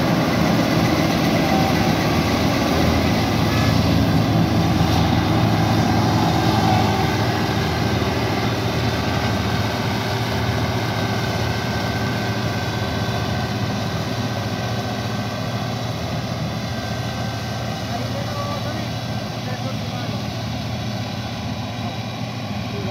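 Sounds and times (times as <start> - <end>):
combine harvester running: 0.0 - 22.9.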